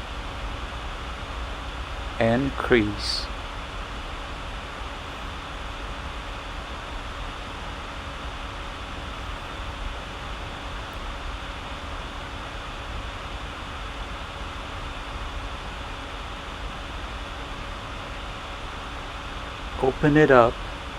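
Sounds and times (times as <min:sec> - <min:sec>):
steady background hiss: 0:00.0 - 0:04.5, 0:14.4 - 0:20.9
faint steady hum: 0:00.0 - 0:20.9.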